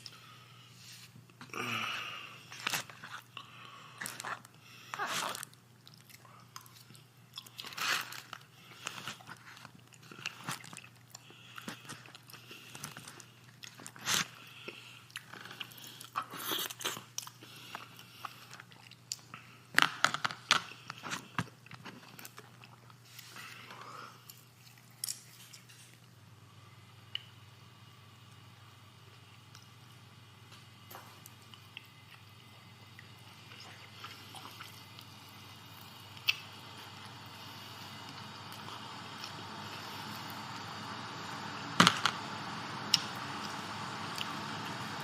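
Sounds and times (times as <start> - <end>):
steady low hum: 0.0 - 45.0
chewing and crunching food: 2.4 - 26.2, 30.5 - 40.7.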